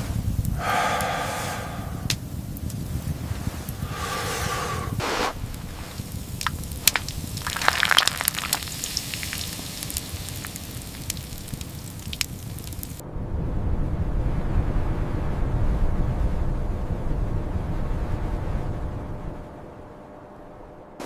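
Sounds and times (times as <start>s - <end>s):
sharp crackles and pops: 0.0s - 13.0s
low steady rumble: 0.0s - 21.0s.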